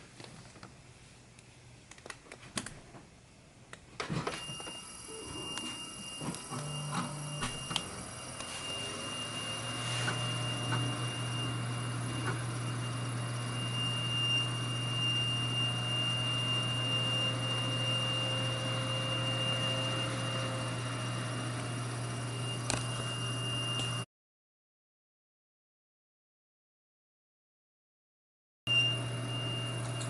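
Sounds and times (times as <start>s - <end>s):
high-pitched electrical whine: 4.3s - 24.1s, 28.7s - 30.0s.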